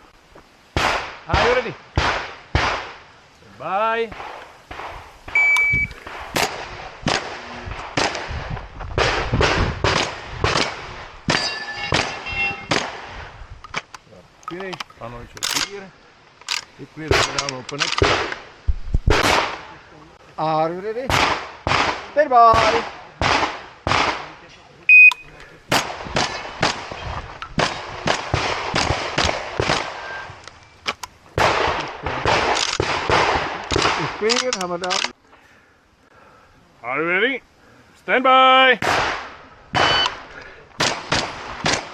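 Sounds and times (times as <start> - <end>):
sharp gunshots: 0.8 - 3.0, 4.0 - 13.3, 17.0 - 18.4, 19.1 - 19.8, 21.1 - 24.4, 25.7 - 27.0, 27.6 - 30.2, 31.4 - 34.4, 38.8 - 41.9.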